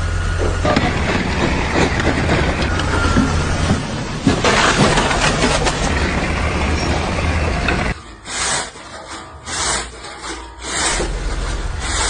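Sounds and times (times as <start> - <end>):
hand tool scraping hard surface: 7.9 - 12.0.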